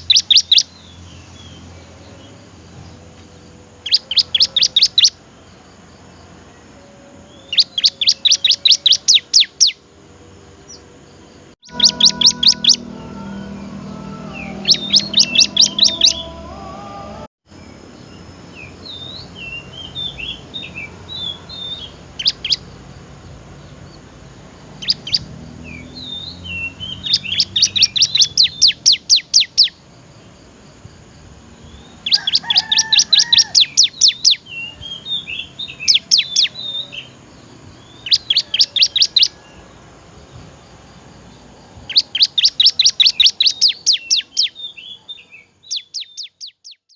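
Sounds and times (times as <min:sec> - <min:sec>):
soft bird twitters: 0:07.5 - 0:09.8, 0:11.6 - 0:16.3, 0:41.9 - 0:46.9
bird singing high notes: 0:11.6 - 0:17.3.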